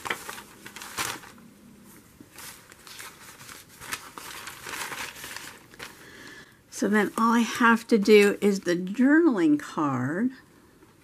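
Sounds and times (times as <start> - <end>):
paper rustling and crinkling: 0.0 - 6.2.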